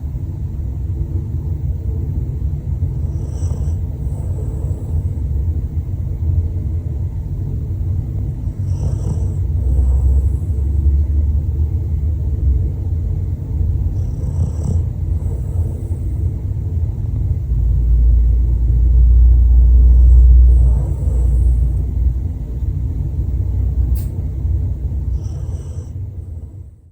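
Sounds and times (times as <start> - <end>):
dog snoring: 2.7 - 6.2, 7.9 - 12.6, 13.4 - 17.4, 19.2 - 24.2, 24.8 - 26.9
brief click: 23.9 - 24.2.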